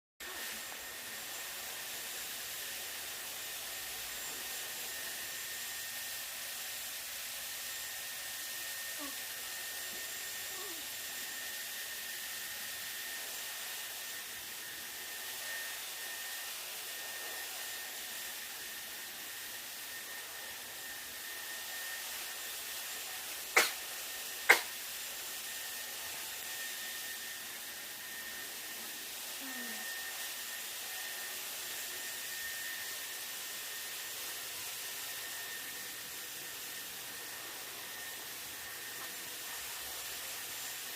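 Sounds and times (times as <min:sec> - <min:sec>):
hair dryer blowing: 0:00.2 - 0:40.9
person sneezing: 0:23.5 - 0:23.9, 0:24.5 - 0:24.8.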